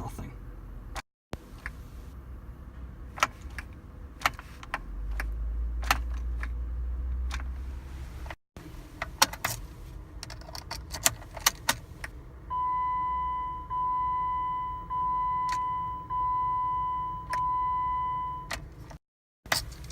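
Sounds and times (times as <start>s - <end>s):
car warning chime beeping: 12.5s - 18.6s.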